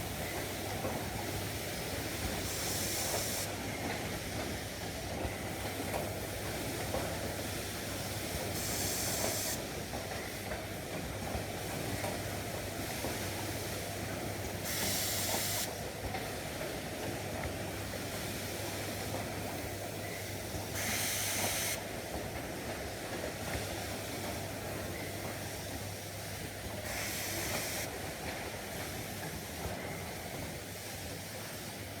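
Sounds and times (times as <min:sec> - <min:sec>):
machine hiss: 0:02.1 - 0:03.6, 0:08.4 - 0:09.7, 0:14.6 - 0:15.8, 0:20.2 - 0:21.8, 0:25.4 - 0:28.0.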